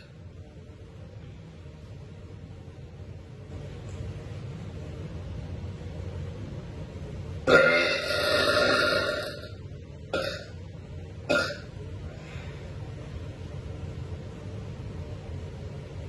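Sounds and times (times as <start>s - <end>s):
woman burping: 7.5s - 9.5s, 10.1s - 10.5s, 11.3s - 11.7s.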